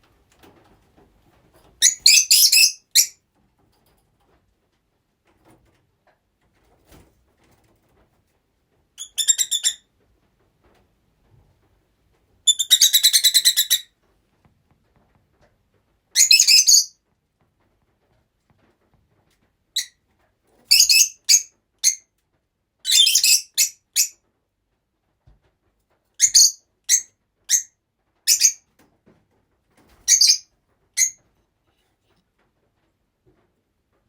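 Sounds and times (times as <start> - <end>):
lovebirds shrill chirps: 1.8 - 3.2, 9.0 - 9.8, 12.5 - 13.9, 16.2 - 16.9, 20.7 - 22.0, 22.9 - 24.1, 26.2 - 27.7, 28.3 - 28.6, 30.1 - 30.4.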